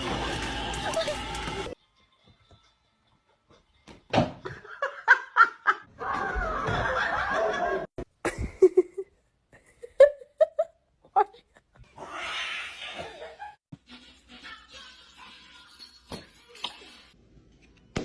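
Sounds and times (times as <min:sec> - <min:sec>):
person laughing: 0:04.5 - 0:11.8.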